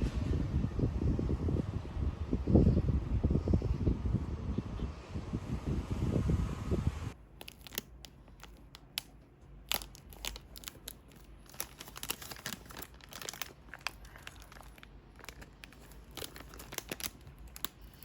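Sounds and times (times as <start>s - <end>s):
paper or plastic crinkling and tearing: 7.4s - 18.0s.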